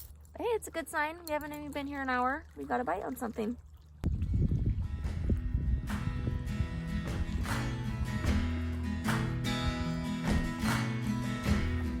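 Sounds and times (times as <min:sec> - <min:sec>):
background music chords: 0:05.0 - 0:12.0.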